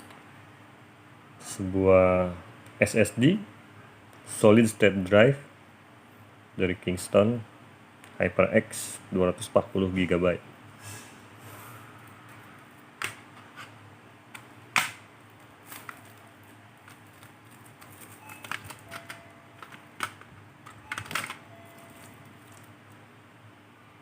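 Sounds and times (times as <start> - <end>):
clicks and knocks of handled drives: 16.8 - 21.4.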